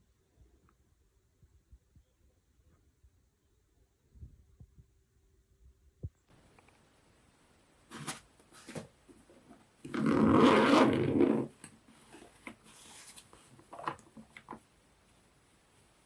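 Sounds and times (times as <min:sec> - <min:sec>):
handling rustles and knocks: 0:07.8 - 0:09.9.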